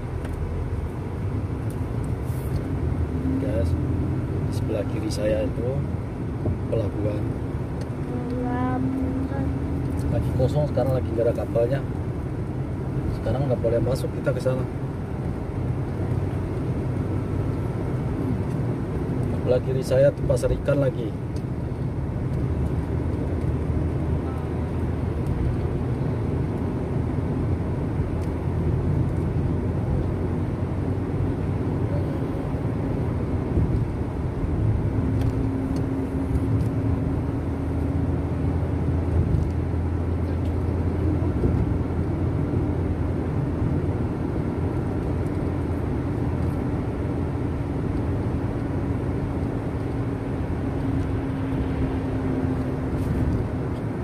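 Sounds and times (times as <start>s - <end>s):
road noise: 0.0s - 54.0s
steady engine hum: 0.0s - 54.0s
vehicle engine rumble: 0.0s - 54.0s.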